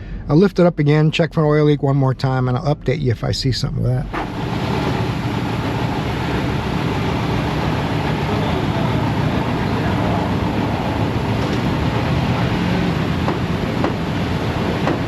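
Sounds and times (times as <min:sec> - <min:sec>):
hydraulic pump motor running: 0:04.1 - 0:15.0.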